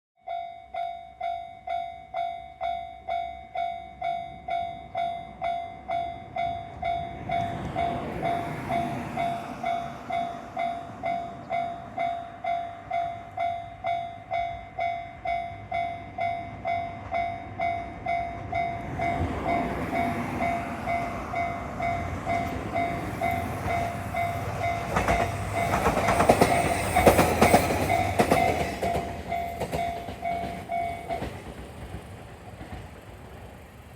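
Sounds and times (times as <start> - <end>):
train running noise: 3.6 - 33.9
wheels clattering over rail joints: 18.4 - 33.9.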